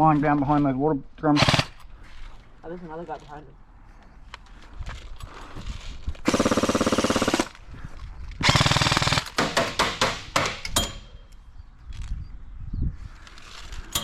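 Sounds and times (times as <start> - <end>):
airsoft gun firing: 6.3 - 7.5, 8.4 - 10.8.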